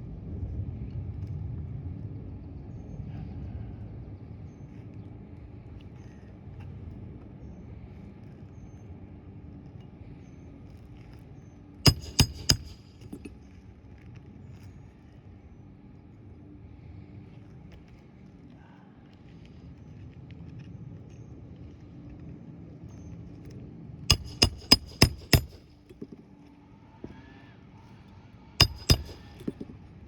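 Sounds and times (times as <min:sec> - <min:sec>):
sharp knocks on shingles: 0:11.9 - 0:13.3, 0:24.1 - 0:26.1, 0:28.6 - 0:29.7.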